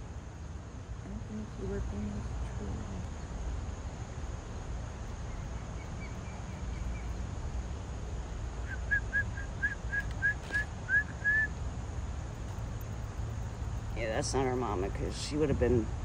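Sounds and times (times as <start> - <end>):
low steady rumble: 0.0 - 16.0
osprey whistled chirps: 8.6 - 11.6.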